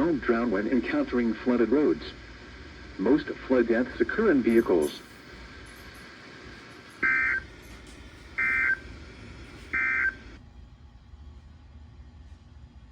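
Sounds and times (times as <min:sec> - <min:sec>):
buzzy data tone bursts: 0:04.2 - 0:10.4.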